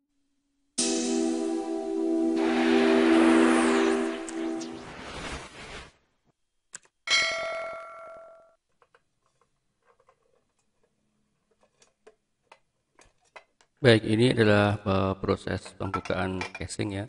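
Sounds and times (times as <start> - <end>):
intro music: 0.8 - 5.7
metallic ding: 7.1 - 8.5.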